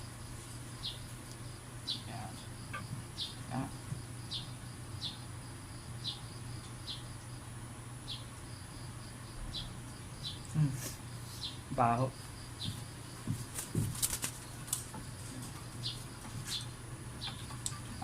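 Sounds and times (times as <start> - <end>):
steady low hum: 0.0 - 18.0
young pigeon peeping: 15.8 - 17.8.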